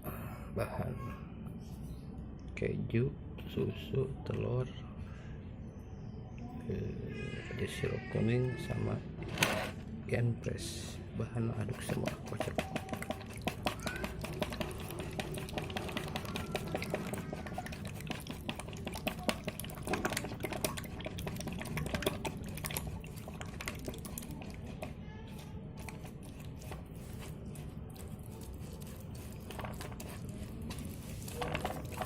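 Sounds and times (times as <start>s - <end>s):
stirring wet mixture in container: 11.4s - 32.0s
liquid sloshing: 11.6s - 32.0s.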